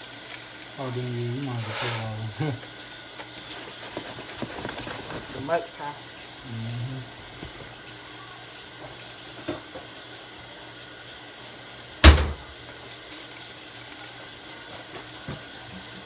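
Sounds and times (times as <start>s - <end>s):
faucet running into sink: 0.0s - 3.8s, 7.2s - 16.0s
loud sharp knock: 12.0s - 12.4s.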